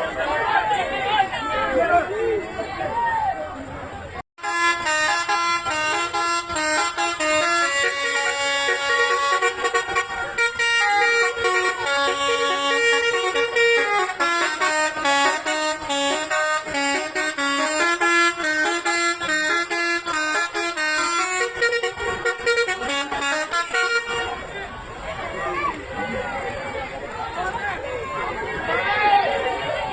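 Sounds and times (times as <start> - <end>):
multi-tone bus air horn tune: 4.4 - 24.6.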